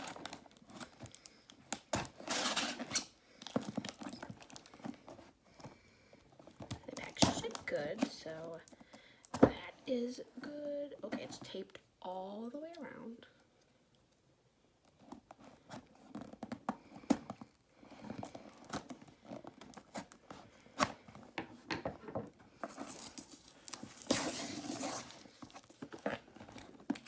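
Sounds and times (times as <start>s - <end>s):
tape tearing: 1.7s - 3.1s, 22.6s - 27.0s
scissors scraping packing tape: 22.8s - 25.4s.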